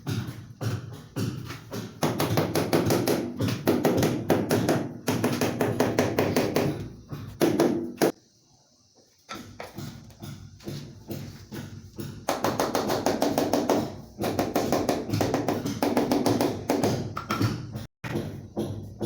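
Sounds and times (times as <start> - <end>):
rapid tapping on wall tile: 0.0 - 8.2, 9.4 - 19.0.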